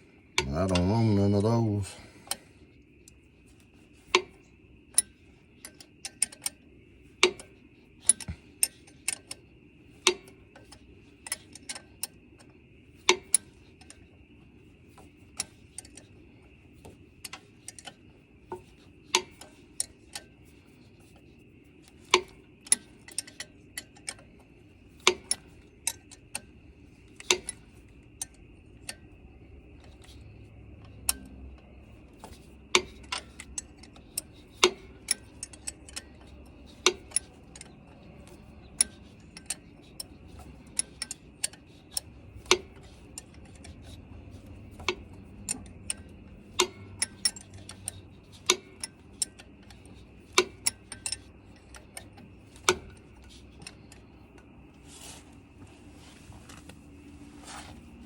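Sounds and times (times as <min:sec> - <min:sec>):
wrench clicking on metal bolts: 0:27.1 - 0:29.0, 0:32.2 - 0:54.4.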